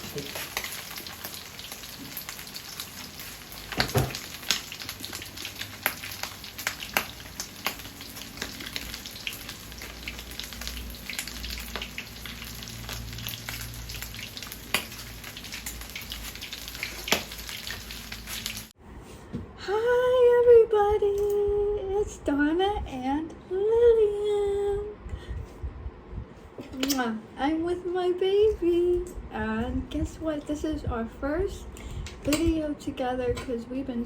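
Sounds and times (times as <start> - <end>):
oil popping and crackling: 0.0 - 18.8
oil sizzling: 0.0 - 18.8.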